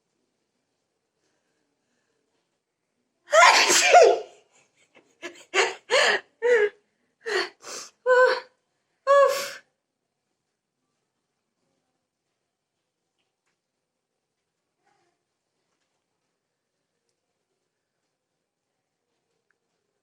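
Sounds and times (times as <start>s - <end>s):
woman sneezing: 3.3s - 4.4s.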